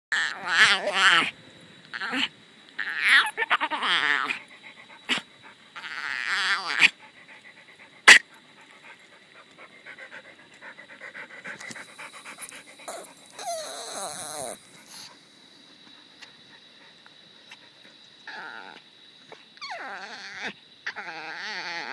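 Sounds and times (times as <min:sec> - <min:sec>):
dog warbling whine: 0:01.9 - 0:04.4, 0:12.0 - 0:15.1, 0:19.6 - 0:21.9.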